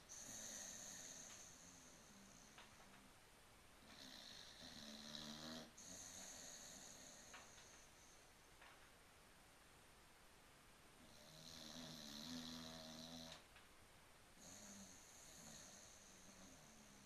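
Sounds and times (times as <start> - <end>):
dog snoring softly: 0.0 - 2.9, 3.8 - 8.2, 11.0 - 13.4, 14.4 - 17.0.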